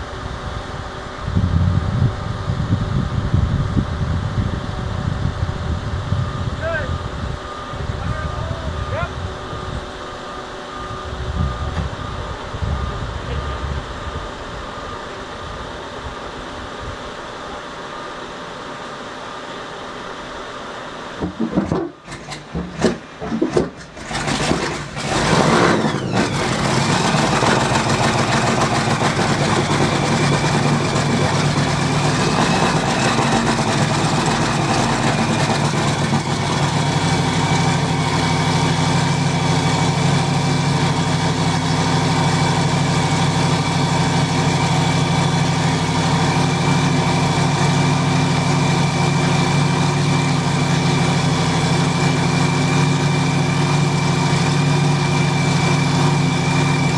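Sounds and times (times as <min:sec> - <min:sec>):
powerboat engine starting and idling: 0:21.2 - 0:56.9.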